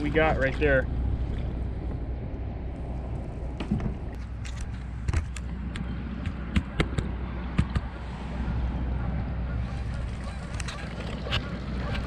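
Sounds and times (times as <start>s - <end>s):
wind rumble on microphone: 0.0s - 12.0s
sharp knocks and clicks: 3.6s - 7.9s.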